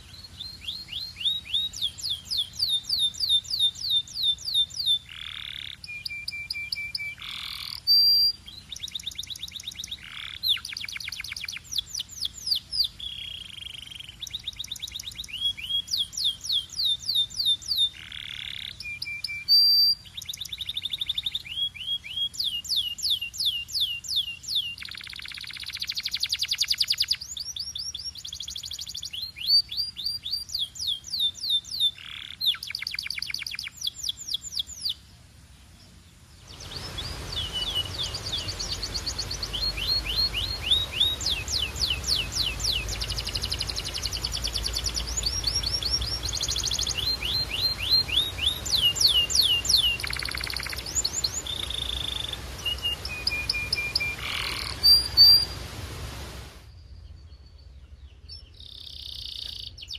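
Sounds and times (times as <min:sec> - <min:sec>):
canary singing: 0:00.0 - 0:35.0, 0:36.5 - 0:55.6
steady hiss: 0:19.9 - 0:57.2.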